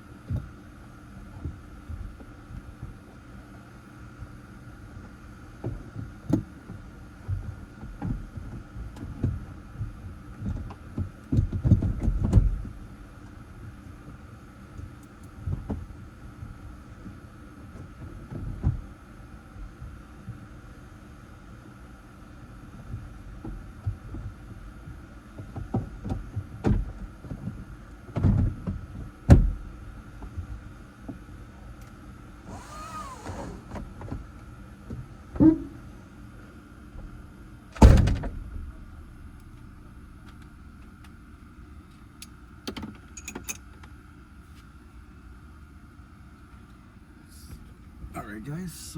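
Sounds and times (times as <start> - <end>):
faint steady hum: 0.0 - 48.9
knocks and clicks of handling in a car: 7.2 - 12.7, 42.6 - 43.7.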